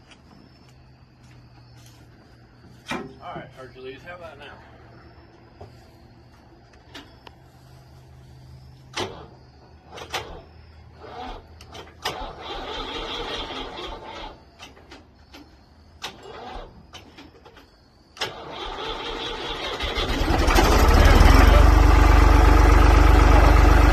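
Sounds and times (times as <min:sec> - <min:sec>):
engine cranking: 0:08.9 - 0:15.1, 0:16.0 - 0:17.6, 0:18.2 - 0:23.9
engine running: 0:18.3 - 0:23.9.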